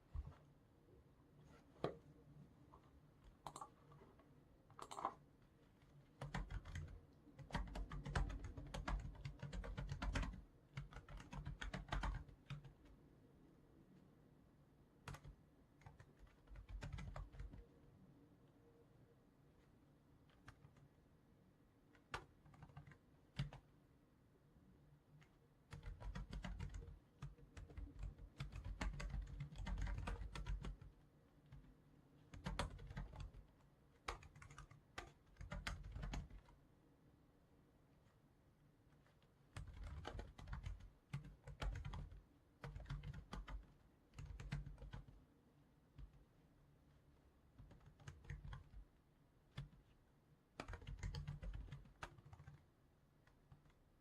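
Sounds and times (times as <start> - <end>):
typing on computer keyboard: 3.2 - 4.0, 4.7 - 5.2, 5.8 - 12.9, 15.1 - 17.6, 21.9 - 23.6, 25.2 - 36.6, 39.0 - 45.2, 47.6 - 48.8, 49.5 - 49.9, 50.6 - 52.6.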